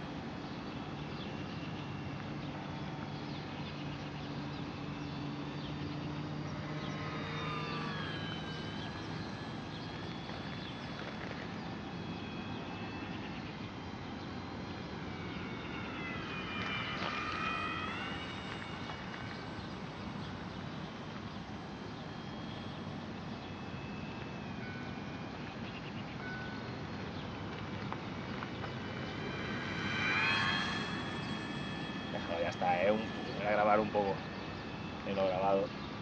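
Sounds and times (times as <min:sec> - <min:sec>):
model plane motor whining: 0:04.4 - 0:25.6, 0:27.0 - 0:36.0.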